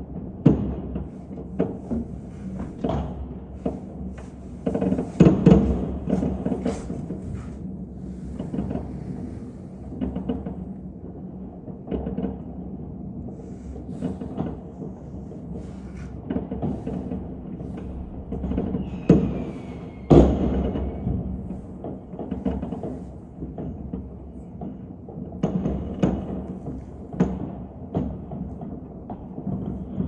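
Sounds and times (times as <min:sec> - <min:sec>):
firework whistle gliding down: 0:18.7 - 0:21.3.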